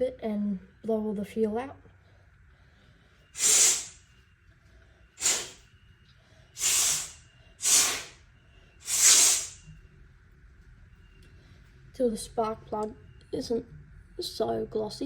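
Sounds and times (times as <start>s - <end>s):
blown air hissing: 3.4s - 4.0s, 5.2s - 5.6s, 6.6s - 8.2s, 8.8s - 9.7s.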